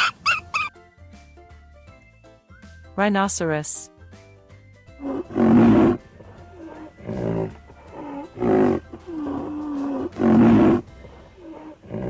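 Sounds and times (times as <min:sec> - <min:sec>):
rhinoceros calling: 0:00.0 - 0:00.7, 0:04.9 - 0:12.0.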